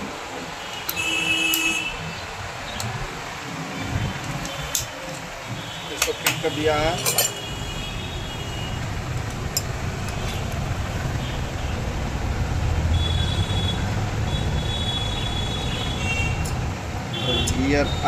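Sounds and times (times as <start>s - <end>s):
vehicle engine rumbling: 0.0s - 18.0s.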